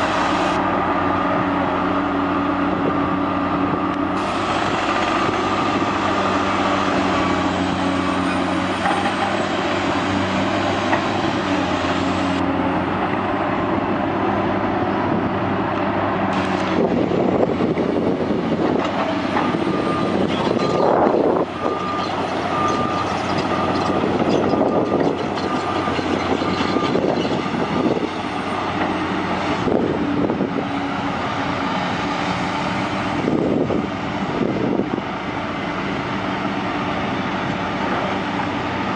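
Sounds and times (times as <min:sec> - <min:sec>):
construction machinery diesel engines: 0:00.0 - 0:38.9
back-up alarm beeping: 0:21.6 - 0:24.1.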